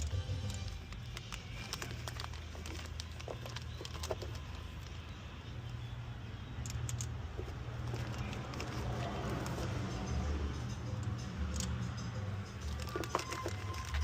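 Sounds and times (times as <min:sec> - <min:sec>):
metal engine parts clicking: 0:00.0 - 0:14.0.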